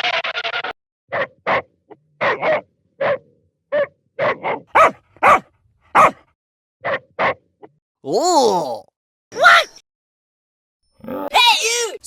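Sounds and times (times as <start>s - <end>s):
dog barking: 1.1s - 7.4s.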